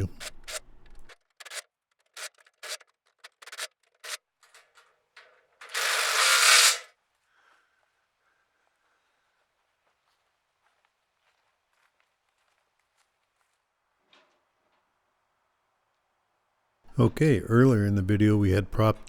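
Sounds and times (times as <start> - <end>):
ratchet wrench clicking: 0.0 - 1.6, 5.6 - 6.9.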